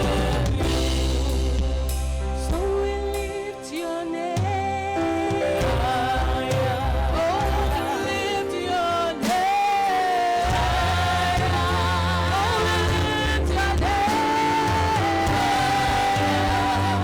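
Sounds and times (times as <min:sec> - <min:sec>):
low bass line: 0:00.0 - 0:03.5, 0:04.4 - 0:08.0, 0:10.5 - 0:17.0
person singing gospel melody: 0:00.0 - 0:17.0.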